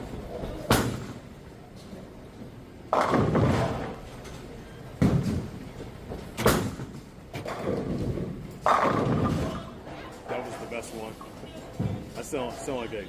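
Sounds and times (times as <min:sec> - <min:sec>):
bowling pins crash: 0:02.9 - 0:04.0, 0:07.5 - 0:09.8
sharp bowling knocks: 0:02.9 - 0:04.0, 0:06.4 - 0:09.8.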